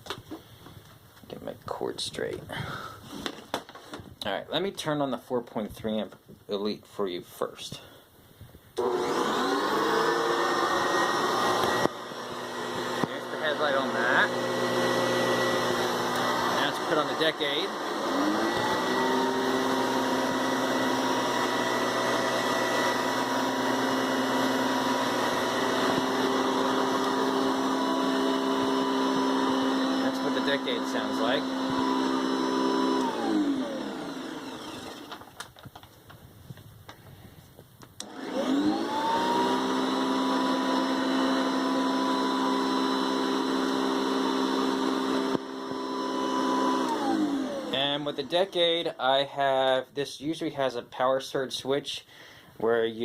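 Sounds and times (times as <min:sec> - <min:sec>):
vacuum cleaner motor whining: 0:08.8 - 0:35.4, 0:38.0 - 0:49.0.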